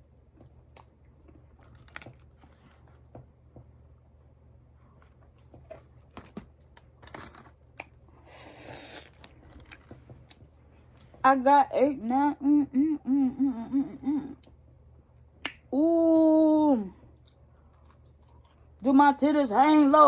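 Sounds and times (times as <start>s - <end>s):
person chewing: 7.2s - 11.1s, 17.2s - 18.8s.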